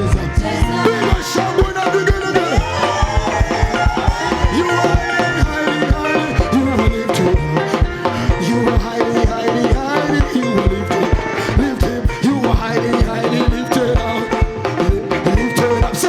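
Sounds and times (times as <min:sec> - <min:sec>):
praise and worship band music: 0:00.0 - 0:16.0
gliding vocal: 0:00.3 - 0:09.2.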